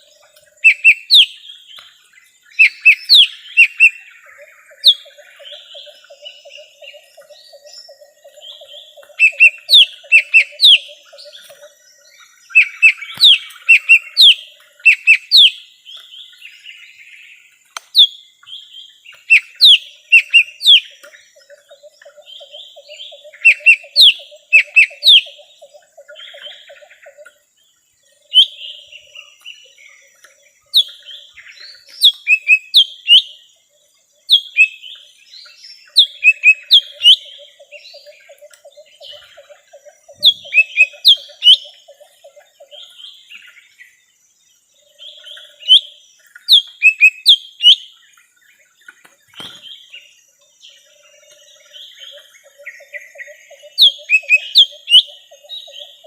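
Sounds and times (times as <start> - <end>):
low rapid bird trill: 0.0 - 56.0
bird sharp sweeping whistles: 46.6 - 47.8.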